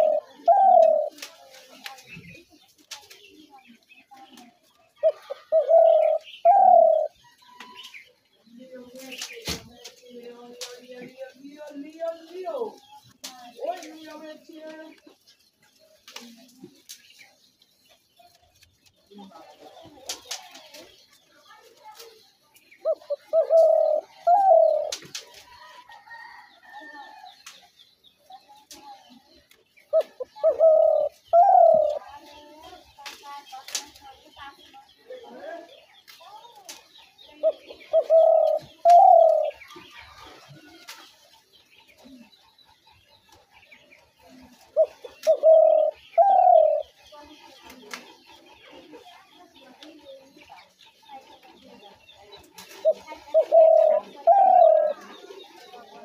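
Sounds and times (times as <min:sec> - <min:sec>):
dove cooing: 0:00.0 - 0:01.2, 0:05.0 - 0:07.2, 0:22.8 - 0:25.1, 0:29.9 - 0:32.1, 0:37.4 - 0:39.6, 0:44.3 - 0:47.0, 0:52.7 - 0:55.6.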